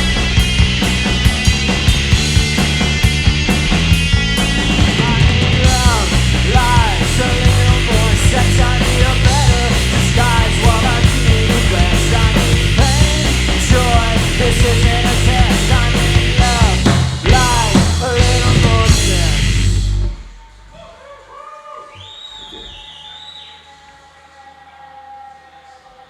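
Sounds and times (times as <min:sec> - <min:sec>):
bass guitar: 0:00.0 - 0:20.7
distorted electric guitar: 0:00.0 - 0:21.3
drums: 0:00.0 - 0:25.9.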